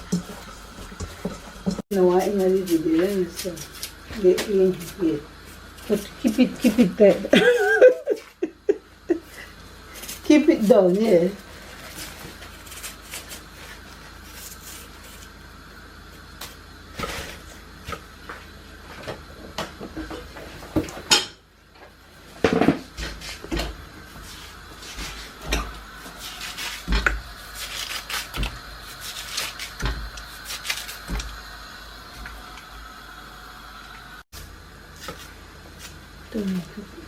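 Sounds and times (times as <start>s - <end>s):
pots and dishes clattering: 0.0s - 1.8s, 19.1s - 21.5s.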